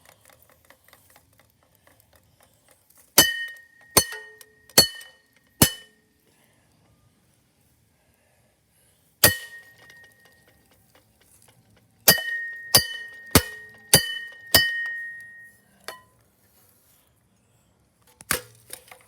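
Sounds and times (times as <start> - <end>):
ceiling fan struck with ringing clink: 3.2 - 6.0, 9.2 - 10.5, 12.1 - 16.1.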